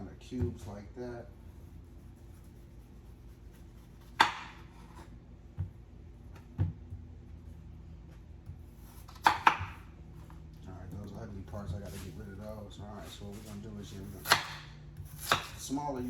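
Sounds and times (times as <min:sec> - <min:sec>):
low steady hum: 0:00.0 - 0:16.0
knife chopping on cutting board: 0:03.8 - 0:06.8, 0:08.5 - 0:09.9, 0:13.4 - 0:15.8.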